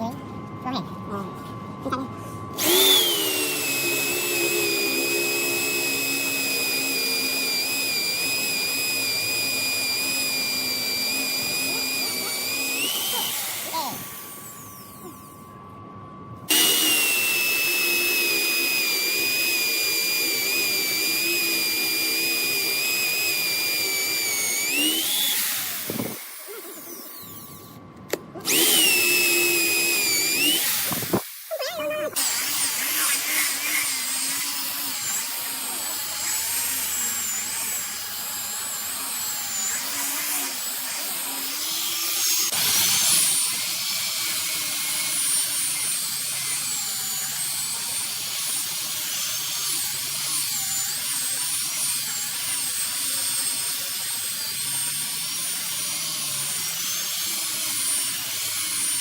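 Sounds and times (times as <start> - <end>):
power tool motor running: 2.5 - 15.4, 16.5 - 27.8, 28.4 - 31.5, 32.2 - 59.0.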